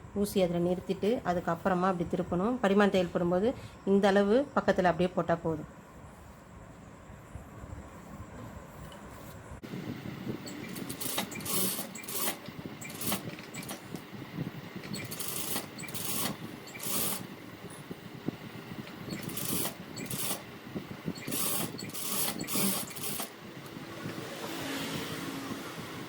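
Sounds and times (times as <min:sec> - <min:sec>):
sewing machine stitching: 0:10.3 - 0:17.6, 0:18.7 - 0:25.4.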